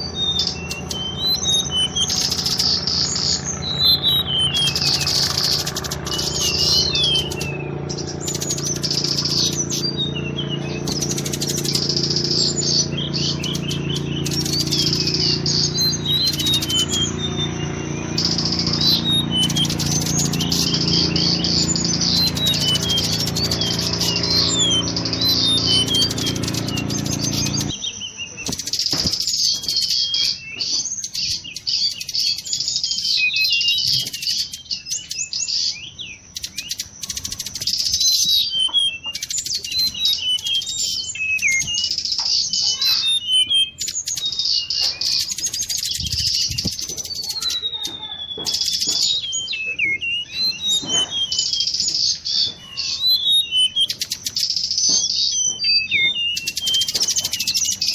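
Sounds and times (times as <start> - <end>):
steady low hum: 0.0 - 27.8
bird whistling song: 0.0 - 57.9.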